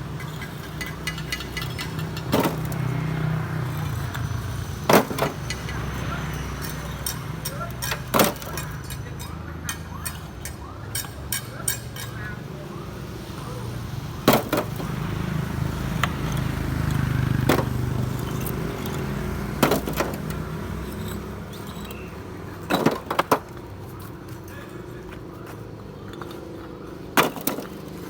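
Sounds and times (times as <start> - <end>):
sharp knocks and clanks: 0.1 - 3.0, 4.8 - 12.2, 14.2 - 15.0, 16.0 - 22.1, 22.7 - 23.6, 27.2 - 27.9.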